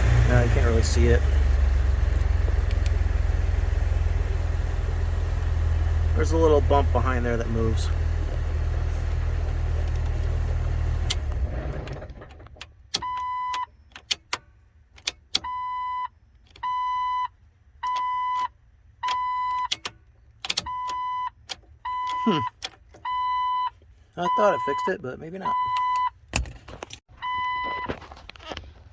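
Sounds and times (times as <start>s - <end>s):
car engine running: 0.0s - 12.5s
car warning chime beeping: 13.0s - 13.8s, 15.4s - 19.8s, 20.6s - 26.2s, 27.2s - 27.9s.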